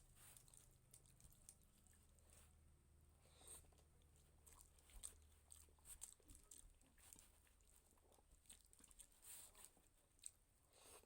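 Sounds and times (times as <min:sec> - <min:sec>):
chewing and wet mouth clicks: 0:00.4 - 0:02.0, 0:03.8 - 0:10.4.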